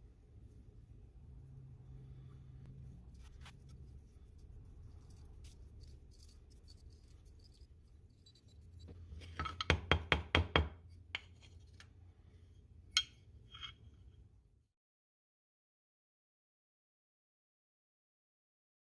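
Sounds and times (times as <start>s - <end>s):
steady low hum: 0.0s - 9.3s.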